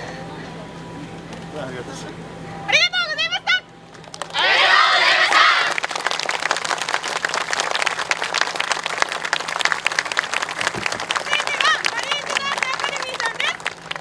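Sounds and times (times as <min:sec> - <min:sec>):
applause: 0:03.9 - 0:14.0
crowd shouting and cheering: 0:04.3 - 0:05.8.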